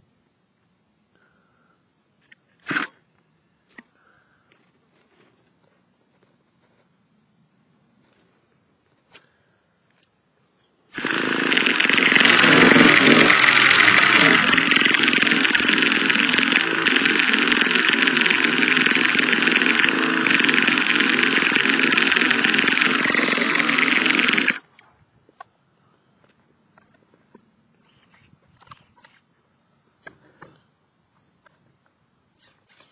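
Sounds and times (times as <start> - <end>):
electric starter motor whirring: 10.9 - 24.6.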